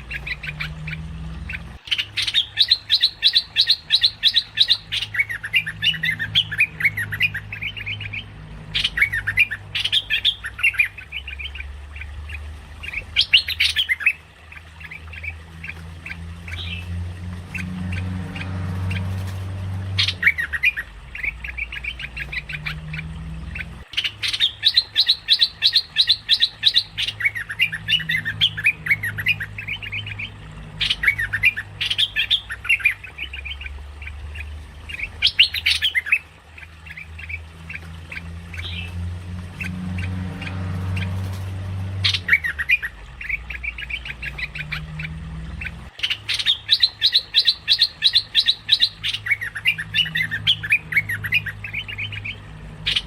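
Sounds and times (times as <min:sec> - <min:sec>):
bird chattering calls: 0:00.0 - 0:41.4, 0:42.0 - 0:53.0
low hum: 0:03.8 - 0:46.0.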